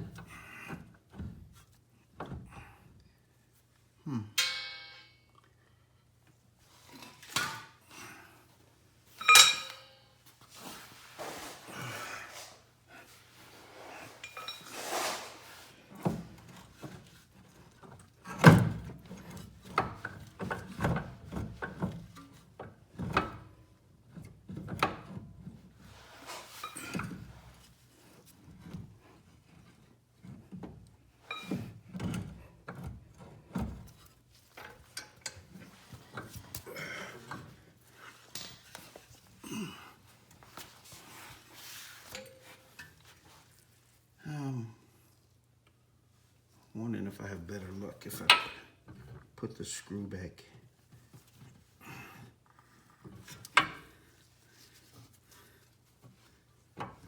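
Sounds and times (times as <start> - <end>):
metal parts knocking and clinking: 9.2 - 10.0.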